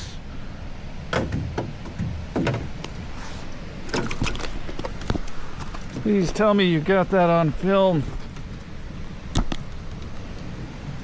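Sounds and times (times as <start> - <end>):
knocks and clatter of fishing gear: 3.8 - 8.7, 9.3 - 10.5.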